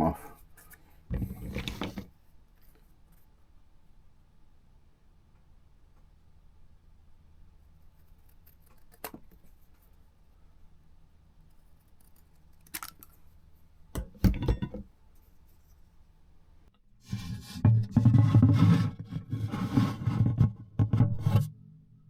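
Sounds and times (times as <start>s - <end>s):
rubbing and handling noise: 0.2s - 3.5s, 15.0s - 16.2s, 17.0s - 21.5s.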